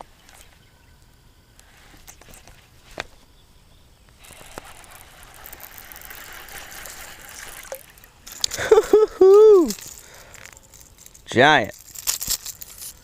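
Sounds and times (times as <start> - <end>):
trickling splashing water: 4.3 - 9.0.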